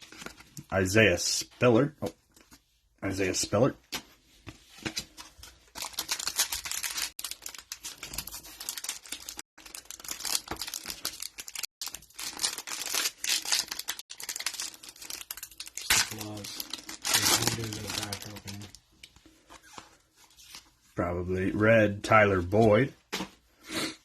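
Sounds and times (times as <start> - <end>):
wrapper crinkling and tearing: 5.7 - 18.8.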